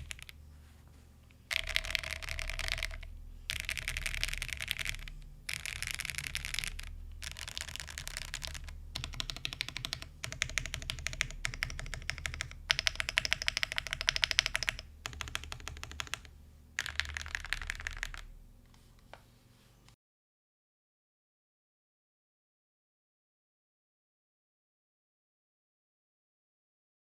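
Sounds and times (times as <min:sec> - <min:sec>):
fast typing on mechanical keyboard: 0:00.0 - 0:00.4, 0:01.5 - 0:18.3.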